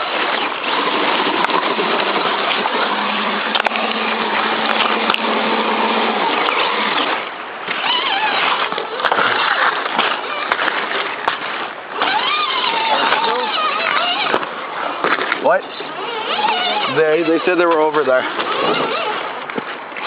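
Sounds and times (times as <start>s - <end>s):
electric motor hum: 0.0s - 8.9s, 11.9s - 14.4s, 15.6s - 19.3s
creek water splashing and rushing: 0.0s - 20.0s
person talking: 12.8s - 13.8s.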